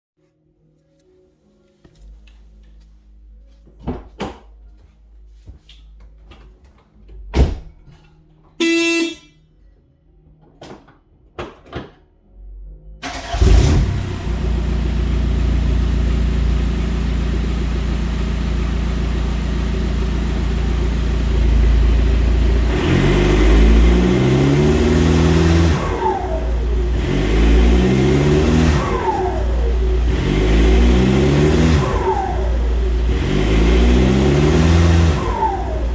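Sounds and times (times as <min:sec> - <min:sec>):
turbo whistle: 0:08.6 - 0:09.3
short horn-like beep: 0:08.6 - 0:09.4
diesel engine starting and idling: 0:13.0 - 0:35.9
engine revving: 0:13.0 - 0:35.9.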